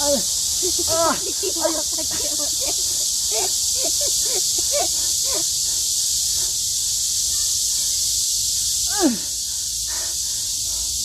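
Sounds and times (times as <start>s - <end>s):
steady high hiss: 0.0s - 11.0s
person grunting: 8.9s - 9.3s.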